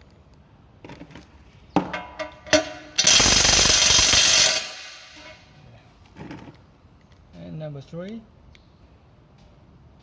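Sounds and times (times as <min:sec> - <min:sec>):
impact wrench hammering: 0:01.9 - 0:05.4.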